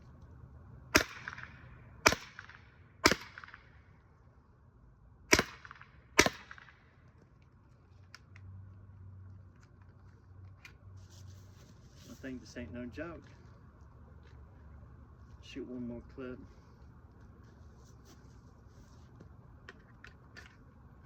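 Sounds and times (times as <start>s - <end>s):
air pistol shots: 0.9s - 3.8s, 5.3s - 6.9s.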